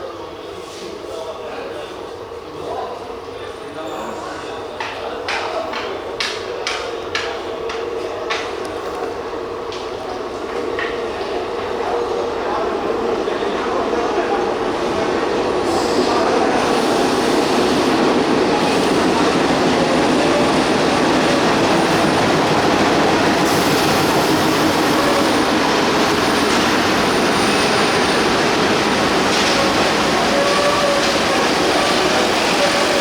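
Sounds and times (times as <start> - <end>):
train rumbling and rattling: 4.8 - 33.0.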